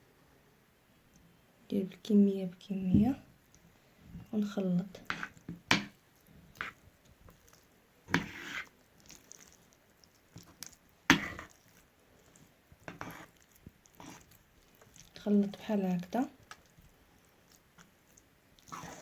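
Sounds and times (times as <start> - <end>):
sticky squishing food in bowl: 4.3 - 19.0.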